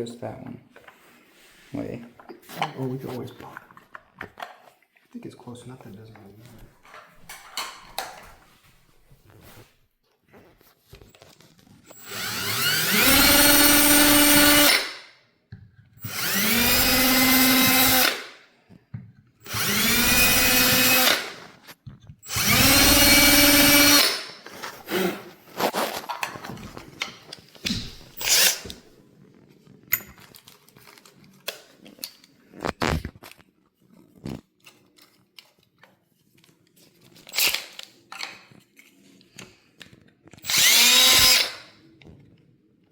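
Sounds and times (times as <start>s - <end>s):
electric drill motor whine: 11.9s - 15.0s, 16.0s - 18.2s, 19.4s - 21.5s, 22.3s - 24.3s, 28.2s - 28.8s, 40.4s - 41.7s.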